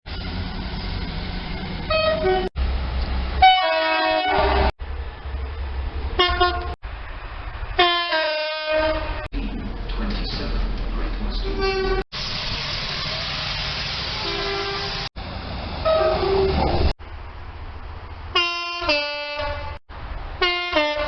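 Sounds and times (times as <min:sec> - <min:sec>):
low rumble of trains: 0:00.1 - 0:21.0
train air horns: 0:03.4 - 0:04.7, 0:07.8 - 0:09.3, 0:14.2 - 0:15.1, 0:15.8 - 0:16.6, 0:20.4 - 0:21.0.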